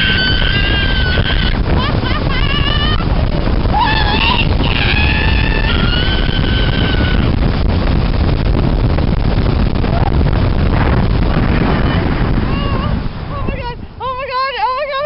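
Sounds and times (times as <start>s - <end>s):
person screaming: 0.0s - 3.0s, 3.7s - 7.3s
person crying out: 0.0s - 3.1s, 3.7s - 7.3s
wind buffeting microphone: 0.0s - 15.0s.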